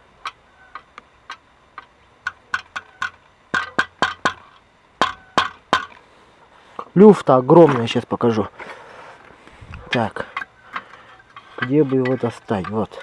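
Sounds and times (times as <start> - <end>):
metal plate clinking and knocking: 0.8 - 6.0, 9.9 - 13.0.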